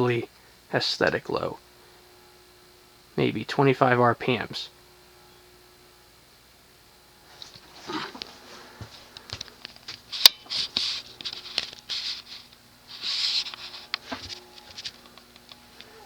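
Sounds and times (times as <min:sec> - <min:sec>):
faint low hum: 0:00.0 - 0:16.0
scratchy rustling: 0:10.1 - 0:15.0.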